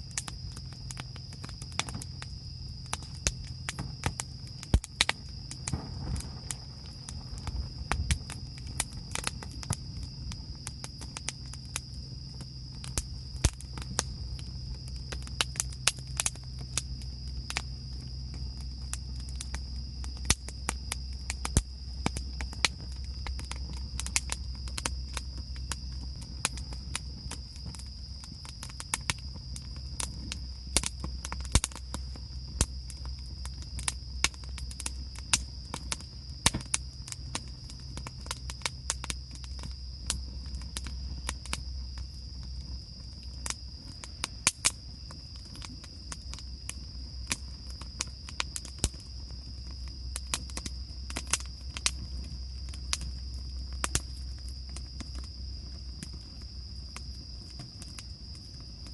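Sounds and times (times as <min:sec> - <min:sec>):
low rumble: 0:00.0 - 0:28.4
sharp crackles and clicks: 0:00.0 - 0:58.9.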